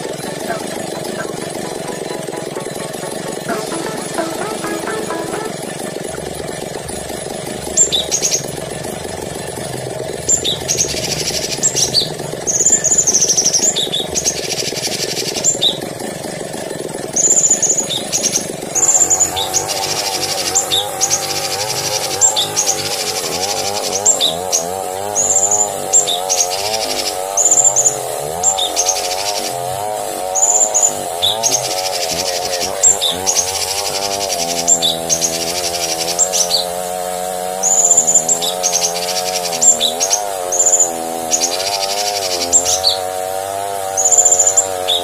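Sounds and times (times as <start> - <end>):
low wavering bird trill: 17.2 - 27.8.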